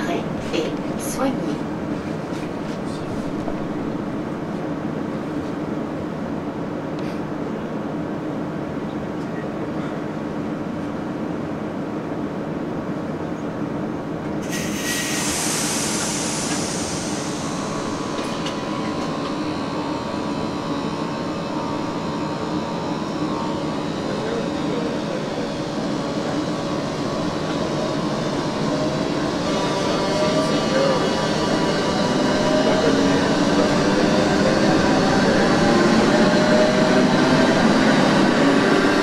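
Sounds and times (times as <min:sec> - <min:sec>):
train traction whine: 0:00.0 - 0:39.0
hiss of air: 0:14.4 - 0:19.5.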